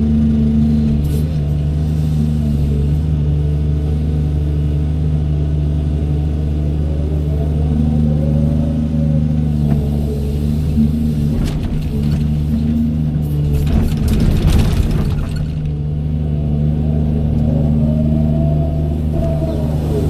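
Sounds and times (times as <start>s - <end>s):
excavator diesel engine running: 0.0s - 20.0s
whine: 4.9s - 20.0s.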